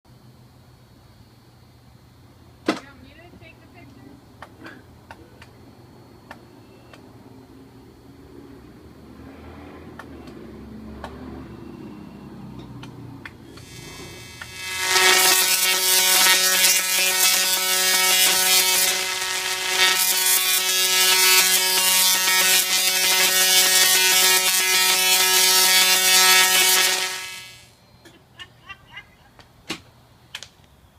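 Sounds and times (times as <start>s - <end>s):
tesla coil buzzing: 13.5s - 27.7s.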